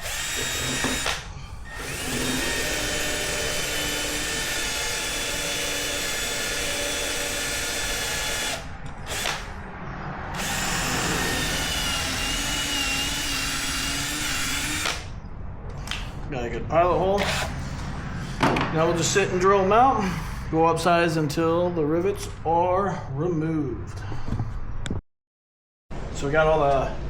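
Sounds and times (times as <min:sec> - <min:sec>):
electric drill boring into metal: 0:00.0 - 0:09.5, 0:10.4 - 0:15.1, 0:17.2 - 0:17.5.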